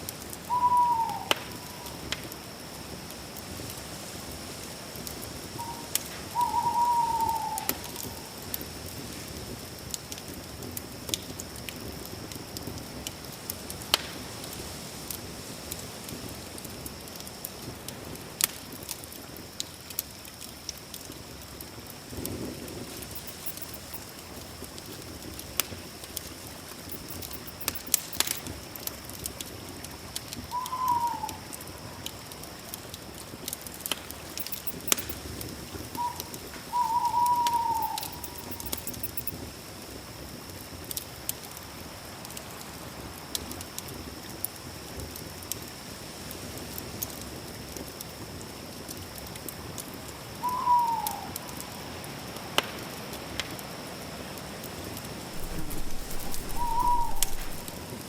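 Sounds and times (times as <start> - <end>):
owl hooting: 0.5 - 2.0, 5.5 - 8.4, 23.0 - 24.4, 26.9 - 28.4, 30.5 - 32.0, 34.3 - 35.2, 35.9 - 39.3, 50.4 - 51.3, 55.4 - 57.8
campfire crackling and popping: 9.8 - 14.3, 17.2 - 30.5, 31.6 - 36.7, 55.4 - 57.8
high insect drone: 21.9 - 40.0, 55.4 - 57.8.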